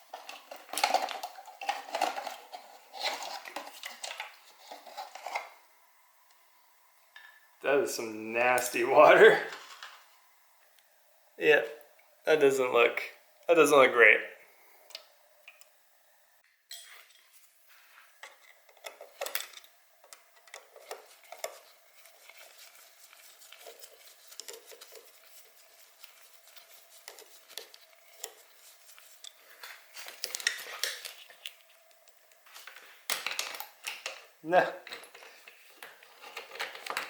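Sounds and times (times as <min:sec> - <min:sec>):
faint steady hum: 0:00.0 - 0:37.0.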